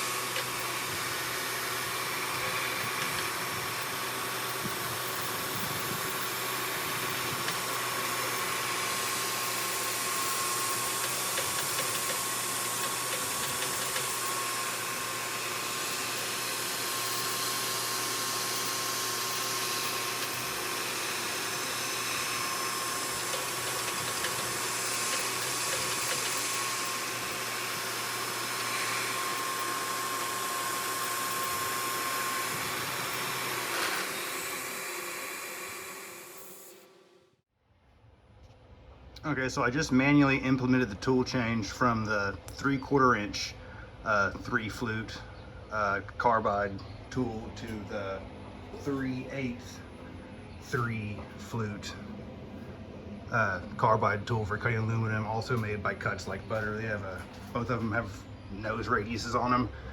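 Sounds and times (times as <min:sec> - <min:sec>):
milling machine cutting metal: 0:00.0 - 0:37.1, 0:53.5 - 0:59.7
high spindle whine: 0:00.0 - 0:37.4, 0:39.2 - 0:59.9.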